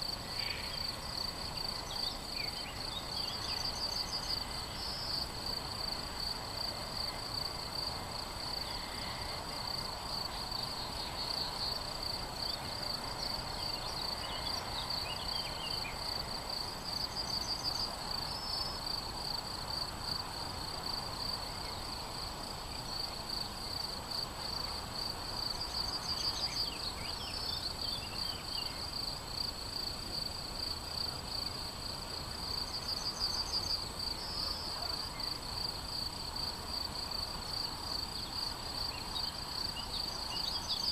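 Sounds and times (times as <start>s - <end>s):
crickets chirping: 0.0s - 40.9s
bird singing: 1.6s - 5.1s, 13.6s - 16.0s, 38.2s - 40.9s.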